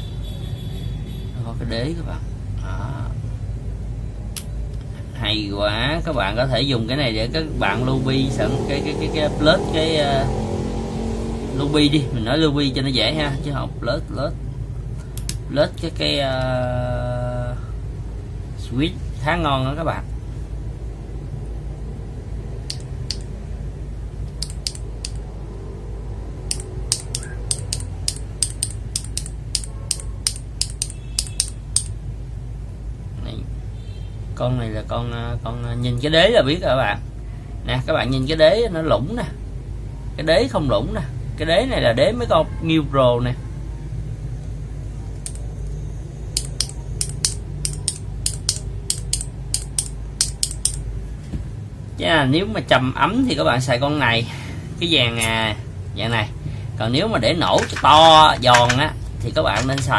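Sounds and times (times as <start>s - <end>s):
keyboard switches clicking: 22.7s - 23.3s, 24.3s - 25.2s, 26.5s - 32.0s, 45.2s - 45.5s, 46.4s - 50.8s.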